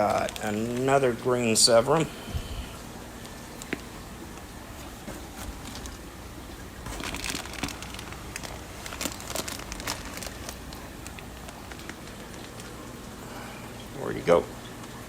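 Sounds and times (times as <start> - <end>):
plastic bag crinkling: 0.0 - 2.1, 4.7 - 13.2.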